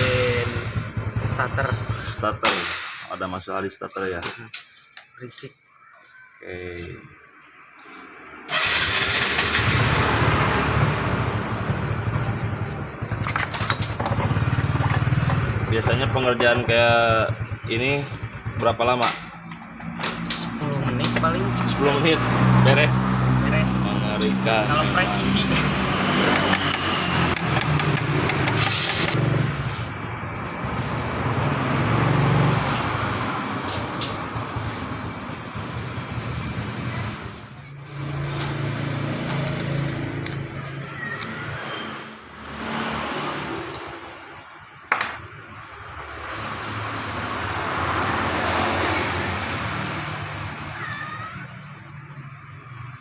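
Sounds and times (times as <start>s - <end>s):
motorcycle engine running: 0.0s - 2.4s, 8.5s - 41.6s
vehicle passing on road: 6.8s - 44.4s, 45.4s - 52.8s
sharp metallic clicks: 24.7s - 29.3s, 37.6s - 41.6s, 52.0s - 53.0s.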